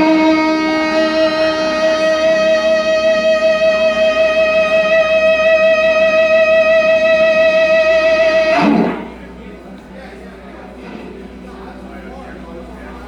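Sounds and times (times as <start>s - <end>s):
electric guitar sustained note: 0.0s - 9.3s.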